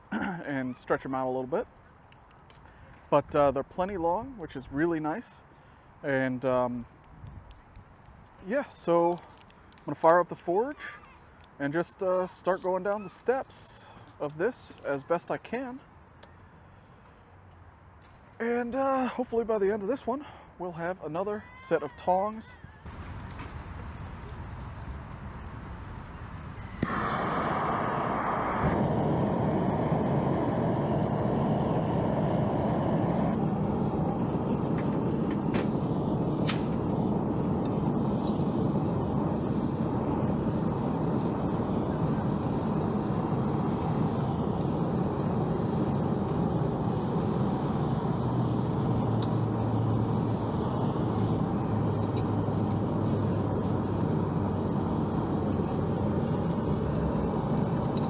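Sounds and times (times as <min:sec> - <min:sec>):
low hum: 0:22.9 - 0:58.0
forge rushing noise: 0:26.6 - 0:58.0.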